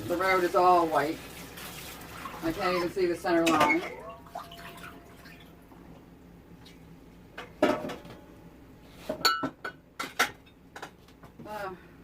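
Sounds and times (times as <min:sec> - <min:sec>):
dishes clinking in a sink: 0:03.3 - 0:05.4, 0:09.1 - 0:11.0.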